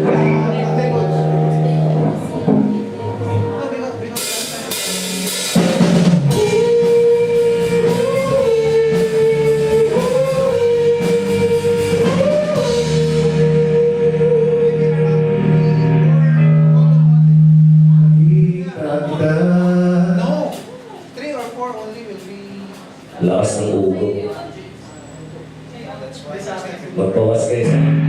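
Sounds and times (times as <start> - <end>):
sustained low note: 0.0 - 4.2
bending lead guitar note: 0.0 - 5.3, 5.9 - 18.7, 27.6 - 28.0
live rock band playing: 0.0 - 18.5, 27.6 - 28.0
drums and cymbals: 4.0 - 14.2.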